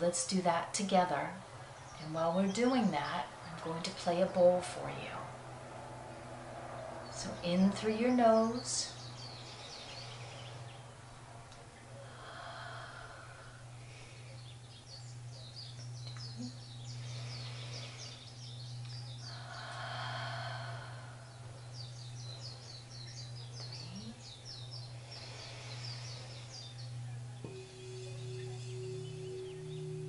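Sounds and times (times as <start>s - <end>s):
birds chirping: 1.5s - 30.0s
deep breath: 12.0s - 14.6s, 16.9s - 18.4s, 19.2s - 22.3s, 25.0s - 26.8s
singing bowl tone: 12.5s - 30.0s
singing bowl strike: 24.6s - 30.0s.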